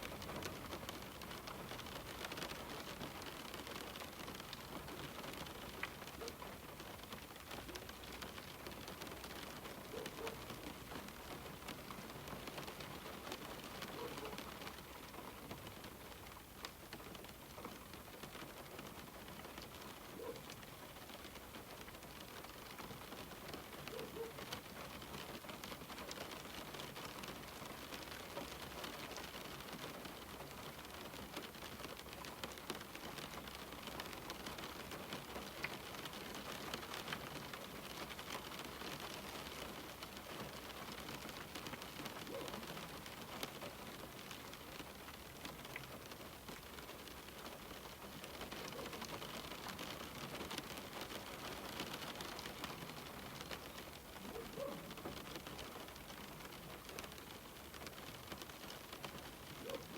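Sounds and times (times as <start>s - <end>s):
rain on a window: 0.0s - 59.9s.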